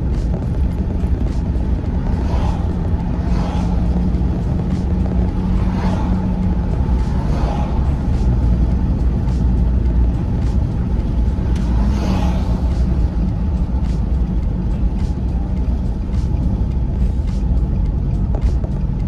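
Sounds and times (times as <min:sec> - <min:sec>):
car road and engine noise: 0:00.0 - 0:19.0.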